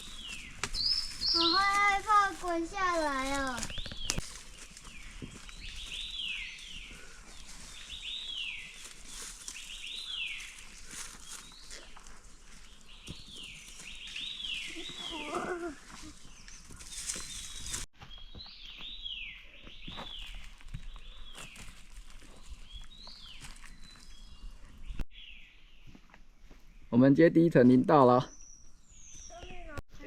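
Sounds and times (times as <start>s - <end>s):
brush rustling: 0.0s - 17.9s
scuffing footsteps: 0.0s - 24.6s, 25.8s - 26.7s.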